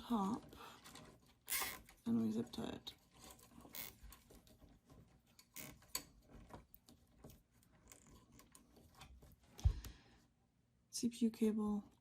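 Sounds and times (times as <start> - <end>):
zip tie clicks and rustles: 0.8 - 2.1.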